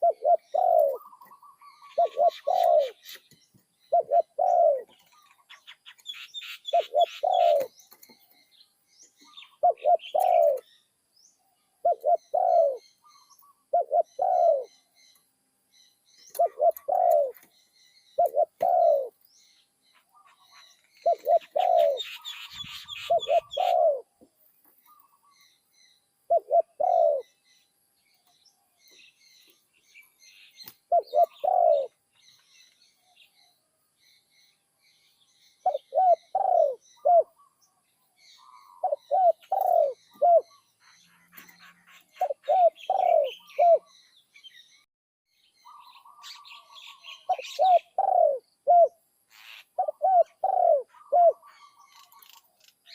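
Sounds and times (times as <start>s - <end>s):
dove cooing: 0.0s - 8.1s, 9.3s - 10.7s, 11.8s - 14.8s, 16.3s - 17.5s, 18.2s - 19.2s, 20.1s - 24.1s, 26.3s - 27.3s, 30.9s - 32.0s, 35.6s - 37.6s, 38.4s - 40.6s, 41.2s - 43.9s, 45.7s - 52.9s
small birds chirping: 0.0s - 52.9s.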